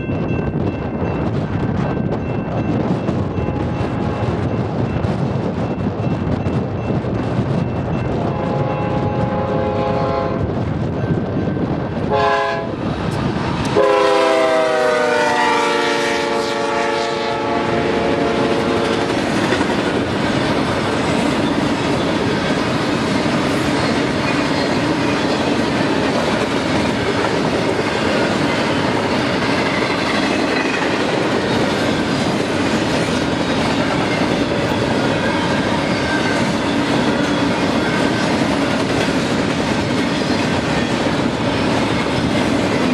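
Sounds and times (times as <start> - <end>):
locomotive air horn: 8.3 - 10.5, 12.1 - 12.8, 13.8 - 19.1.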